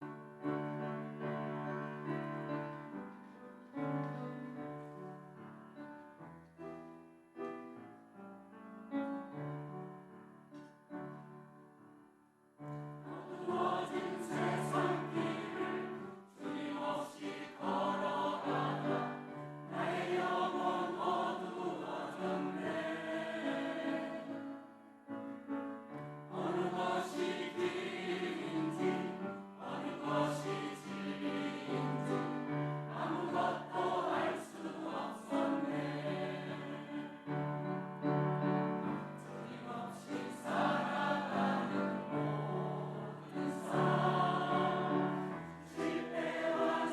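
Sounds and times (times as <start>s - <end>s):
church choir singing: 0.0s - 5.5s, 12.6s - 46.9s.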